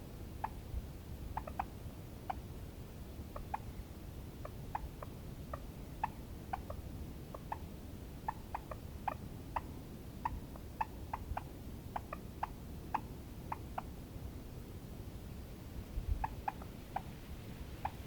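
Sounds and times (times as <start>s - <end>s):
low background noise: 0.0s - 18.0s
turkeys clucking: 1.4s - 1.7s.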